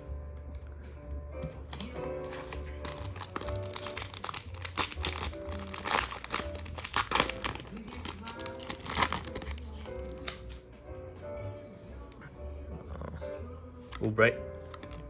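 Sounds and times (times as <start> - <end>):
background music: 0.0 - 15.0
plastic card packs crinkling: 1.4 - 10.6.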